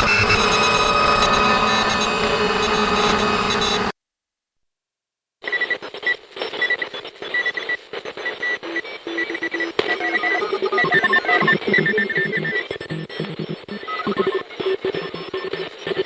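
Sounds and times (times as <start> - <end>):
morse code beeps: 8.4 - 15.7
computer-style blips: 9.9 - 16.0.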